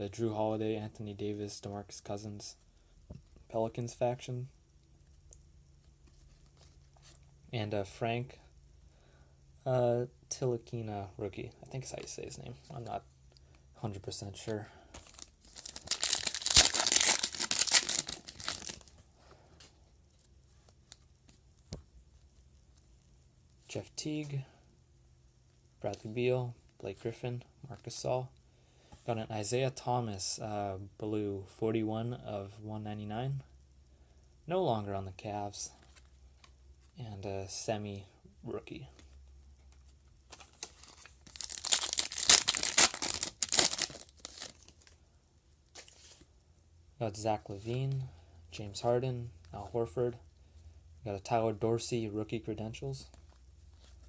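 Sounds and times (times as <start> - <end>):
plastic wrapper tearing and crinkling: 15.1 - 18.9, 40.4 - 45.0.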